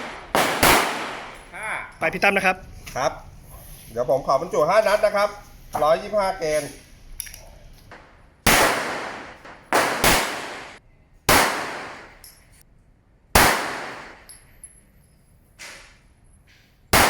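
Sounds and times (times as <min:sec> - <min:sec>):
pistol shots echoing indoors: 0:00.0 - 0:01.5, 0:08.4 - 0:12.3, 0:13.3 - 0:14.4.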